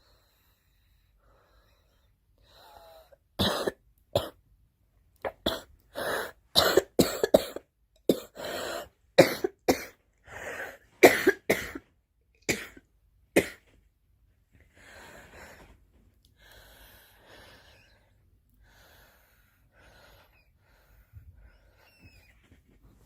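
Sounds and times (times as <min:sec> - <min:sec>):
girl coughing: 0:03.4 - 0:04.4, 0:05.5 - 0:08.4, 0:09.2 - 0:10.0, 0:11.0 - 0:11.9
noisy breaths: 0:14.6 - 0:22.3.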